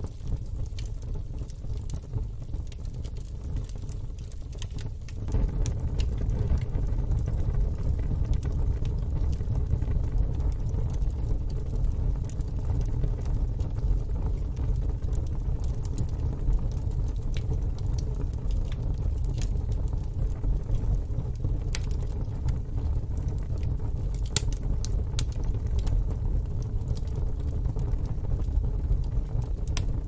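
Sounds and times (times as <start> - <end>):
fire low rumble: 0.0 - 30.0
wood fire crackling and popping: 0.0 - 30.0.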